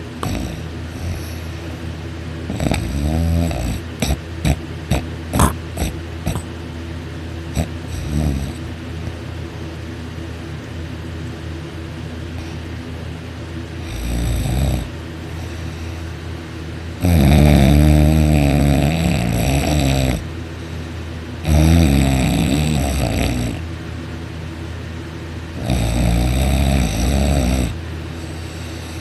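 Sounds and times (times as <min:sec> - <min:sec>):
man snoring loudly: 0:00.2 - 0:01.4, 0:02.5 - 0:06.5, 0:07.6 - 0:08.6, 0:13.8 - 0:14.9, 0:17.0 - 0:20.3, 0:21.4 - 0:23.7, 0:25.6 - 0:29.0.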